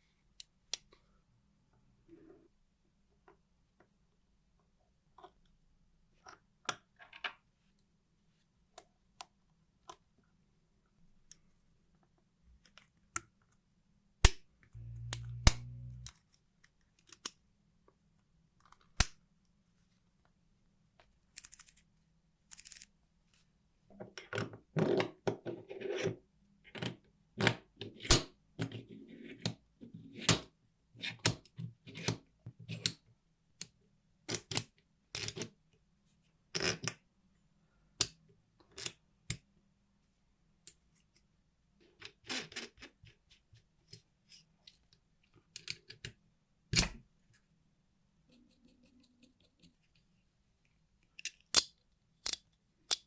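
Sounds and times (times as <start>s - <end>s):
low hum: 14.8s - 16.1s.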